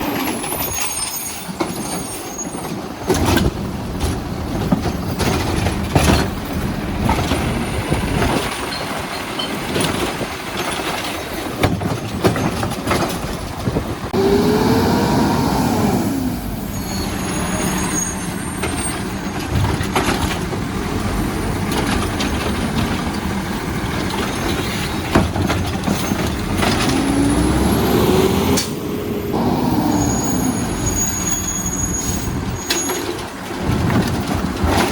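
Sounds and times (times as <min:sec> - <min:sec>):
carts banging and clanking: 0:00.0 - 0:14.2, 0:16.5 - 0:29.4, 0:30.0 - 0:34.9
garbage truck running: 0:00.0 - 0:34.9
hydraulic arm whining: 0:14.1 - 0:19.1.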